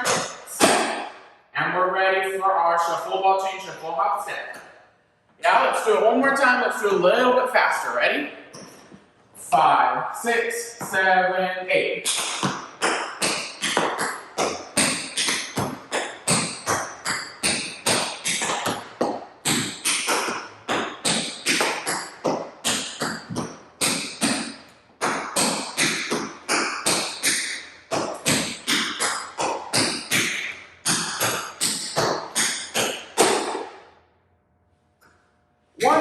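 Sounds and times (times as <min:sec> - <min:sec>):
tap shoes tapping on floor: 0:12.1 - 0:30.3.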